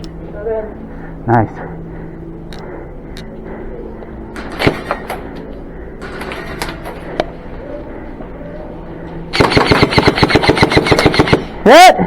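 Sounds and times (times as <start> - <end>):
steady hum: 0.0 - 12.0
airsoft gun full-auto fire: 4.5 - 5.0, 9.3 - 11.6.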